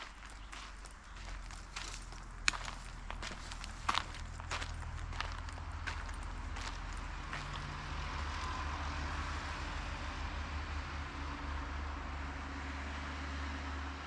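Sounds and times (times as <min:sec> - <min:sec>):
footsteps: 0:00.0 - 0:08.6
distant engine drone: 0:00.0 - 0:14.0.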